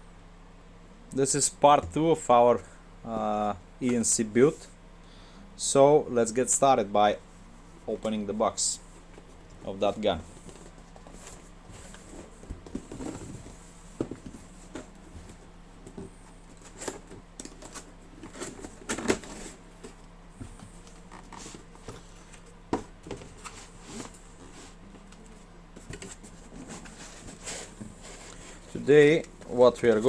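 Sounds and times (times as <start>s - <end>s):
box contents rustling: 25.8s - 30.0s.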